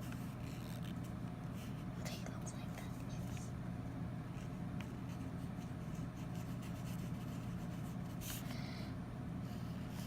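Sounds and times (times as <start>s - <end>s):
steady low hum: 0.0s - 10.0s
pen scratching on paper: 4.3s - 8.4s.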